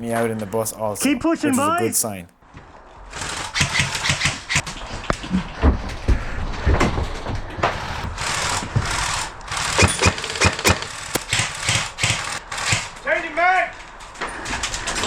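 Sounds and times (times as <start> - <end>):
airsoft guns firing bursts: 3.2 - 4.6, 8.2 - 13.0
sharp clicks and knocks: 6.7 - 13.1.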